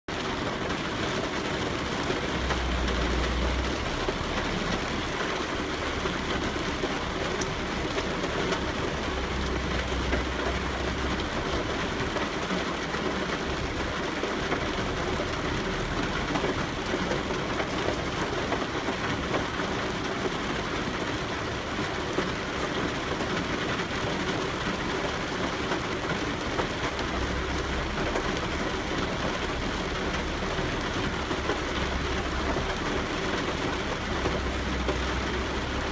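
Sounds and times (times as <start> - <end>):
steady rain: 0.1 - 35.9.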